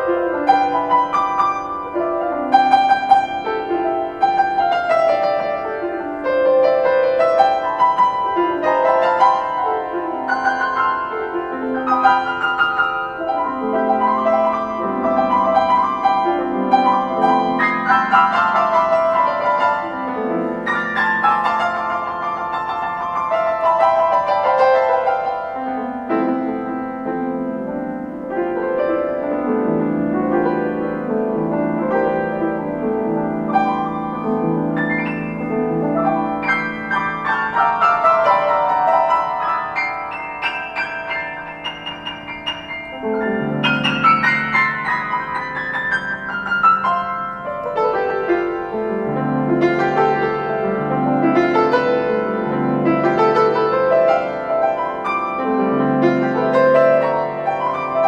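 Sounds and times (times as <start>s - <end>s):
solo piano music: 0.0s - 58.0s.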